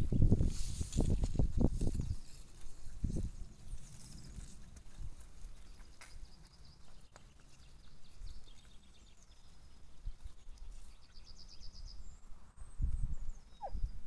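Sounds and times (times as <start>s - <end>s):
faint bird chirps: 7.6s - 14.0s
bird trill: 13.1s - 14.0s.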